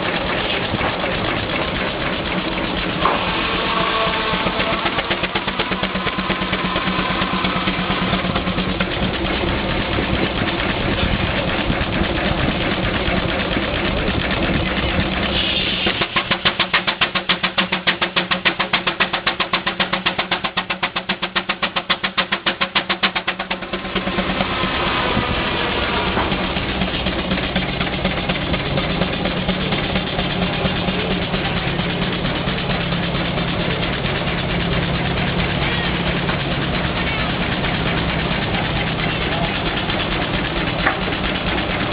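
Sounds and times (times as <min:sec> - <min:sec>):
low hum: 0:00.0 - 0:16.2
steam engine exhaust chuffing: 0:00.0 - 0:41.9.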